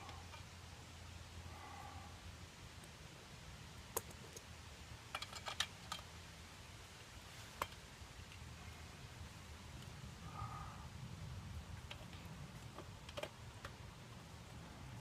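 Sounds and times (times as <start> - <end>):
small metal hardware clinking: 5.1 - 6.1.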